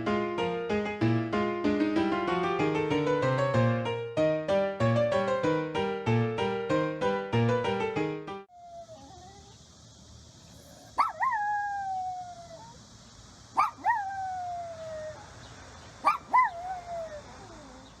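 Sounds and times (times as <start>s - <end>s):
dog-like howl: 8.5s - 9.6s, 10.6s - 12.8s, 16.1s - 18.0s
high-pitched hiss: 8.5s - 18.0s.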